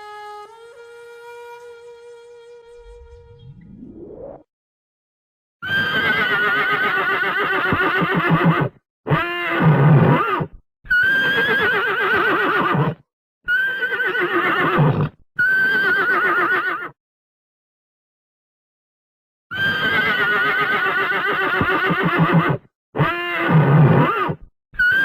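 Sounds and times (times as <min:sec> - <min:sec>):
horse whinnying: 0:05.6 - 0:17.0, 0:19.5 - 0:25.0.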